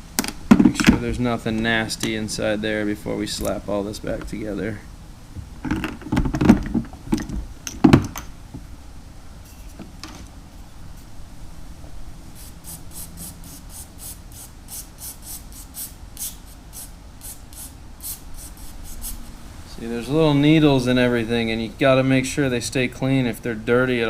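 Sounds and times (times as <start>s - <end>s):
metal parts clunking on a bench: 5.6s - 8.3s.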